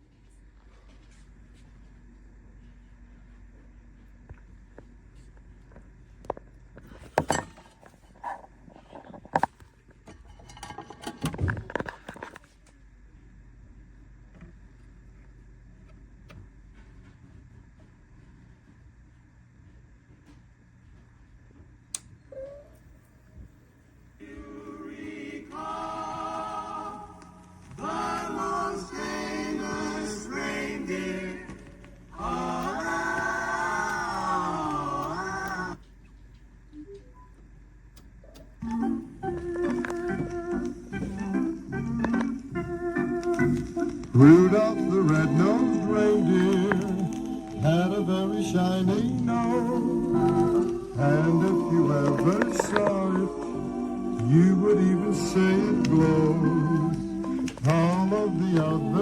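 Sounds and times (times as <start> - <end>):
rustling and scraping: 6.8 - 12.7
choir singing held chords: 24.2 - 35.8, 38.6 - 59.0.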